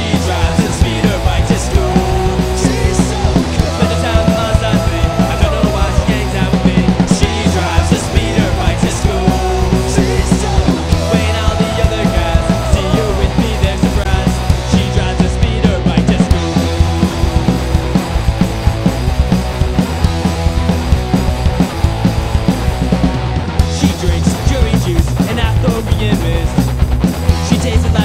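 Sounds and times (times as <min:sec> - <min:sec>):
person singing: 0:00.0 - 0:16.4
loud rock music: 0:00.0 - 0:28.0.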